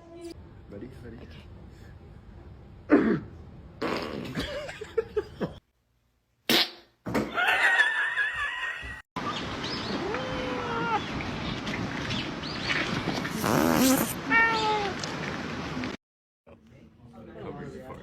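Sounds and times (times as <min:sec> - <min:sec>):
fart sound effects: 0:03.8 - 0:04.4, 0:06.5 - 0:07.0, 0:13.3 - 0:14.2.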